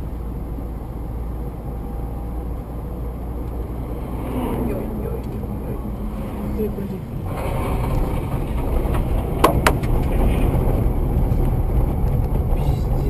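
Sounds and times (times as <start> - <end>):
car engine and road noise: 0.0 - 13.0
sharp knocks: 7.7 - 10.6.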